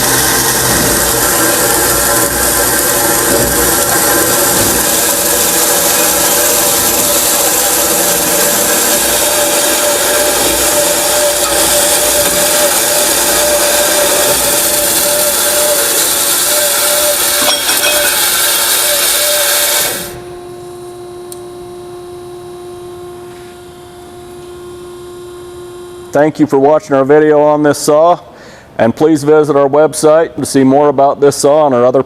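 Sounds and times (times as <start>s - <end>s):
band saw cutting metal: 0.0s - 20.3s
steady hum: 0.0s - 30.5s.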